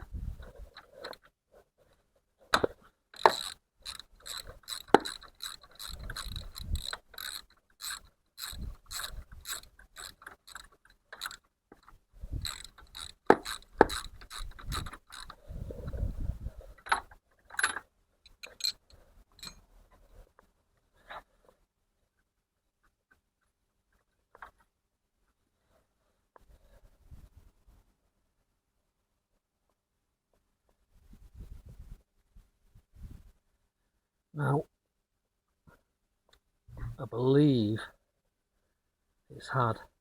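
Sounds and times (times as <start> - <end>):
ratchet wrench clicking: 2.6 - 11.4, 12.3 - 15.4, 17.6 - 19.6.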